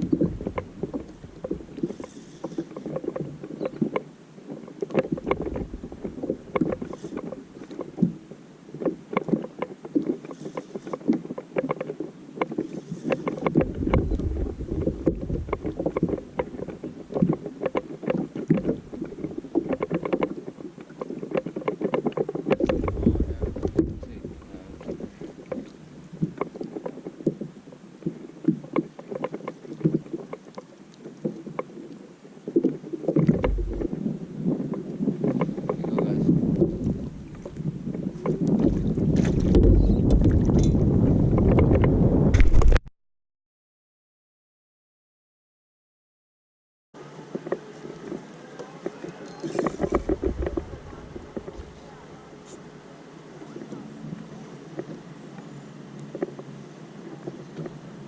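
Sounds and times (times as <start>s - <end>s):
wind buffeting microphone: 0.0s - 1.9s, 5.1s - 6.9s, 13.3s - 17.5s, 22.6s - 26.4s, 33.2s - 42.8s, 49.6s - 52.4s
water slapping against boat hull: 0.0s - 8.2s, 8.8s - 31.9s, 32.5s - 42.8s, 47.3s - 52.7s.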